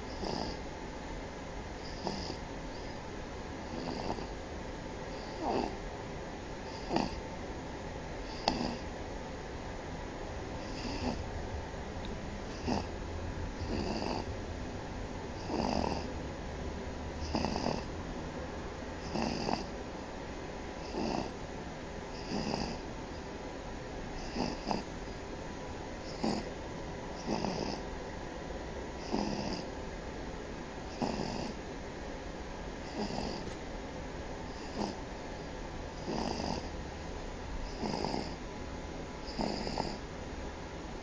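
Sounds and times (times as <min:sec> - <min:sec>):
baby snoring: 0:00.1 - 0:00.6, 0:01.8 - 0:03.0, 0:03.6 - 0:04.4, 0:05.1 - 0:05.8, 0:06.7 - 0:07.2, 0:08.2 - 0:08.9, 0:10.6 - 0:11.3, 0:12.5 - 0:12.9, 0:13.6 - 0:14.3, 0:15.4 - 0:16.2, 0:17.2 - 0:17.9, 0:19.0 - 0:19.7, 0:20.8 - 0:21.4, 0:22.1 - 0:23.3, 0:24.2 - 0:24.9, 0:26.0 - 0:26.5, 0:27.2 - 0:27.8, 0:29.0 - 0:29.7, 0:30.9 - 0:31.6, 0:32.8 - 0:33.6, 0:34.5 - 0:35.0, 0:36.0 - 0:36.7, 0:37.6 - 0:38.4, 0:39.2 - 0:40.0.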